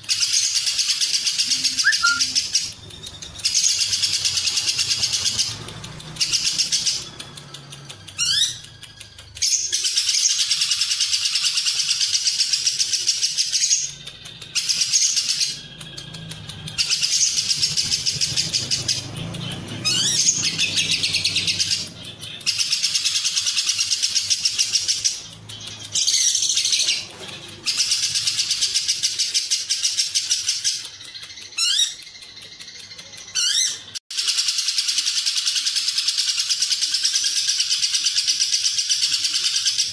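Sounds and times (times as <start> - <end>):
lovebird singing high chatter: 0.0 - 39.9.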